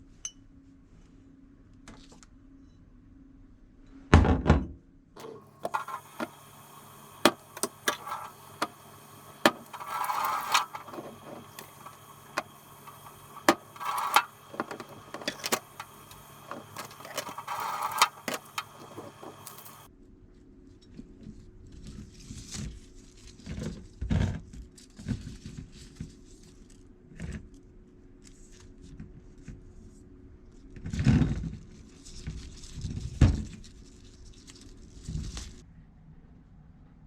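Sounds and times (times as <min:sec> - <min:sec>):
steady low hum: 0:05.2 - 0:19.9.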